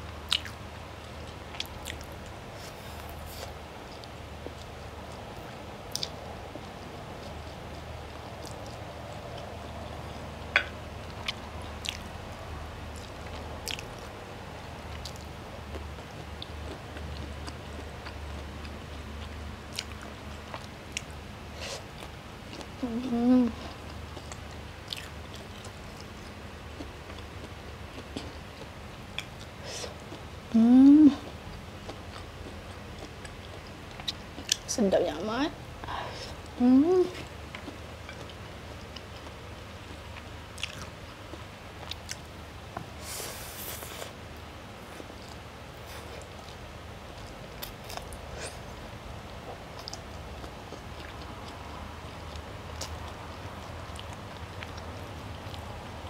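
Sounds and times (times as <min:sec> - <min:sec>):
person chewing: 0:00.3 - 0:00.6, 0:01.5 - 0:04.7, 0:05.9 - 0:09.5, 0:10.6 - 0:12.1, 0:13.0 - 0:14.1, 0:23.6 - 0:30.2, 0:31.8 - 0:34.7, 0:37.2 - 0:42.3, 0:44.8 - 0:55.7
short hiss: 0:43.0 - 0:44.1.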